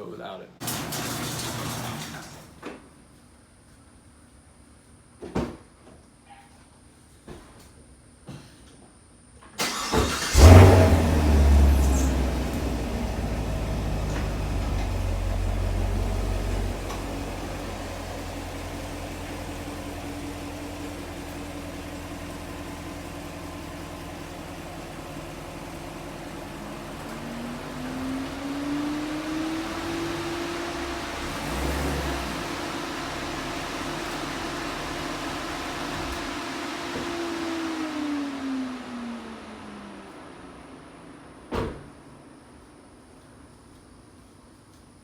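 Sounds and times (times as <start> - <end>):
car engine starting and idling: 9.6 - 43.2
rising whine: 24.0 - 42.7.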